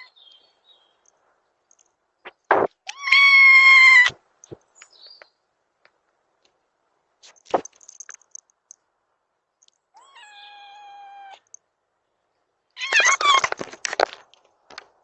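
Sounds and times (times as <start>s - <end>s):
sharp knock: 2.5s - 2.7s
cat meowing: 2.9s - 4.2s, 10.0s - 11.4s.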